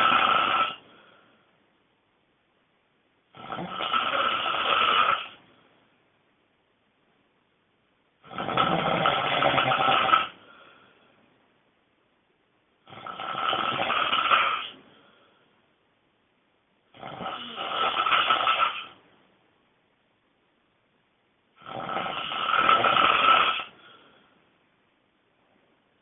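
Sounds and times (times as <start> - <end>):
person snoring loudly: 0.0 - 0.8, 3.3 - 5.4, 8.2 - 10.4, 12.8 - 14.8, 16.9 - 19.0, 21.6 - 23.8.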